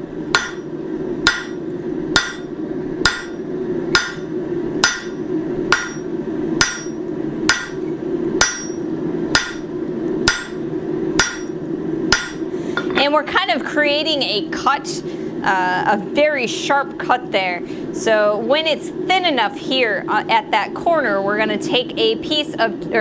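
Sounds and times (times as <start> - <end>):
steady low hum: 0.0 - 23.0
hammer ringing on anvil: 0.4 - 0.7, 1.3 - 1.6, 2.2 - 7.8, 8.4 - 9.7, 10.3 - 10.6, 11.2 - 13.0.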